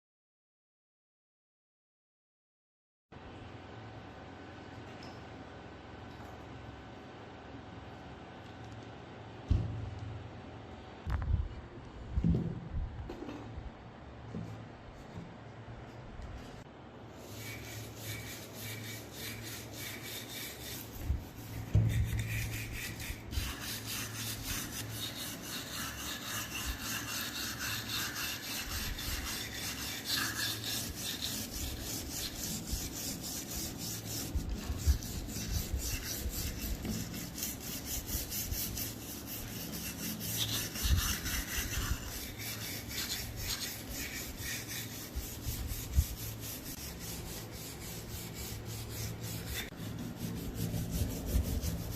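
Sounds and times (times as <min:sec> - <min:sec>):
knocks: 0:09.5 - 0:10.0
hand tool rasping on metal: 0:17.2 - 0:51.9.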